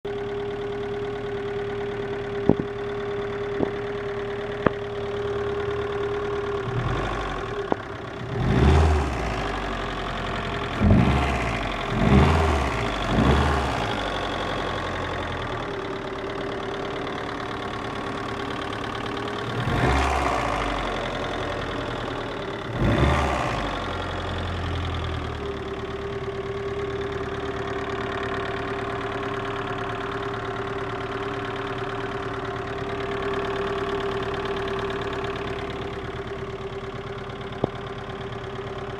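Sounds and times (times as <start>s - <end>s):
engine idling with knock: 0.1s - 38.9s
engine revving: 6.5s - 15.7s, 19.4s - 25.3s.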